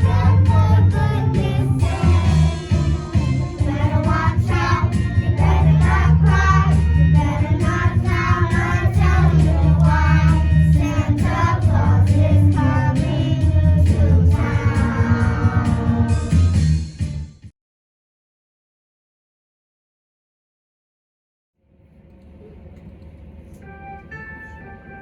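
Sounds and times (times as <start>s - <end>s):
children singing: 0.0s - 16.5s
instrumental accompaniment with bass: 0.0s - 17.5s.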